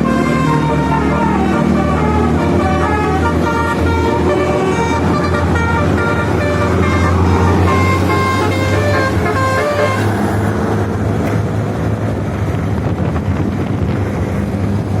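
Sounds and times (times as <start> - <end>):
bus horn playing a melody: 0.0 - 10.4
bus engine running: 0.0 - 15.0.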